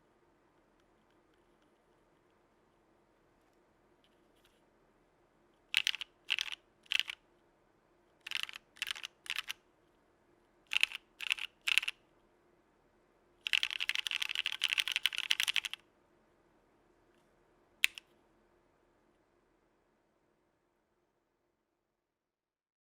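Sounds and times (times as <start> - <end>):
mechanical keyboard keystrokes: 5.7 - 7.2, 8.2 - 9.6, 10.7 - 11.9, 13.4 - 15.8, 17.8 - 18.0.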